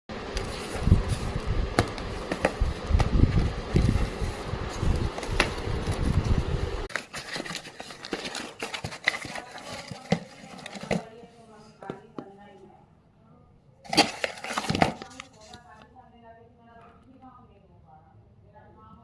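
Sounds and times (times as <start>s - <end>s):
package clicks and crinkly rustles: 6.9s - 11.0s, 13.9s - 15.8s.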